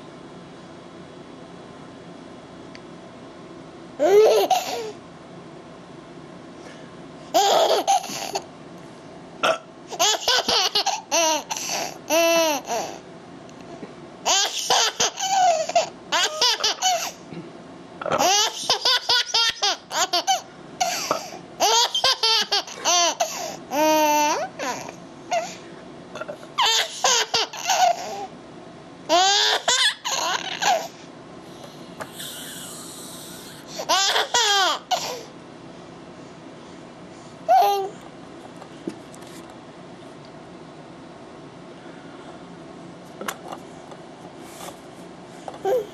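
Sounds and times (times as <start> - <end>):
young child laughing: 4.0 - 5.0, 7.3 - 8.5, 10.0 - 13.0, 14.3 - 17.5, 18.2 - 25.4, 26.6 - 28.3, 29.1 - 31.0, 32.1 - 35.3.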